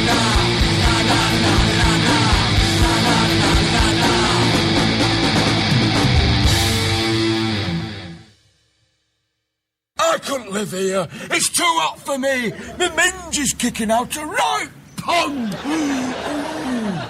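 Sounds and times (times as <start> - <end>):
loud instrumental rock music: 0.0 - 8.6.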